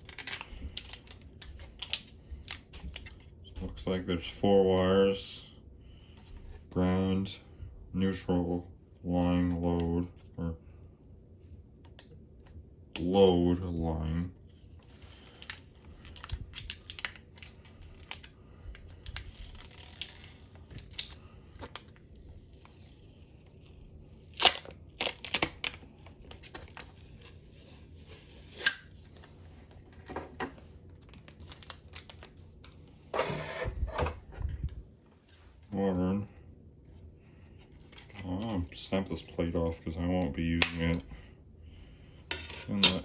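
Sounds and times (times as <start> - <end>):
paper and plastic rustling: 0.0 - 3.3, 14.5 - 35.6.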